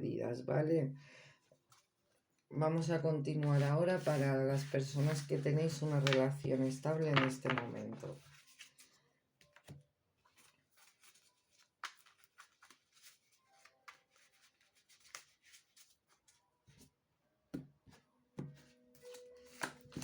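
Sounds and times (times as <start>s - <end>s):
cards tapping and rustling: 3.4s - 8.7s, 9.4s - 15.9s, 17.6s - 20.0s.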